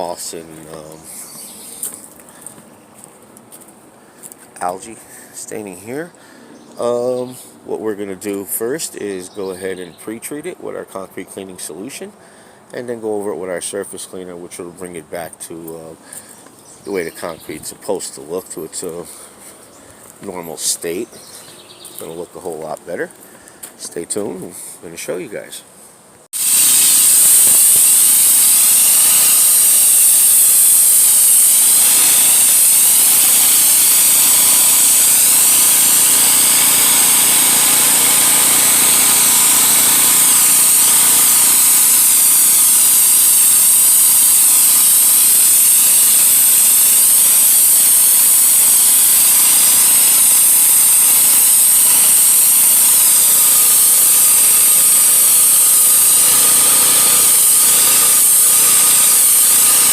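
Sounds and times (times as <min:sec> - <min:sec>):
pressure washer jet hissing: 0:00.0 - 0:02.0, 0:26.4 - 0:59.9.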